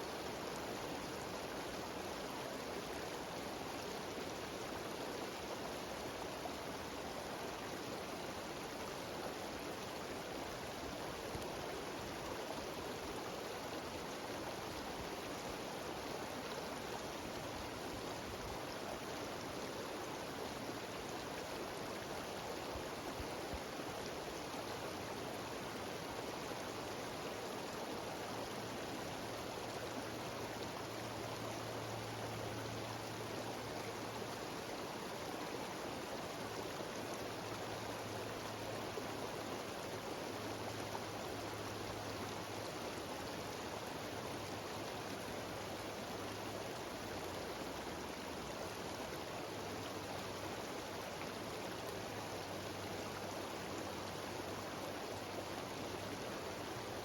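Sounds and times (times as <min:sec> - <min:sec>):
mountain stream rushing over rocks: 0:00.0 - 0:57.0.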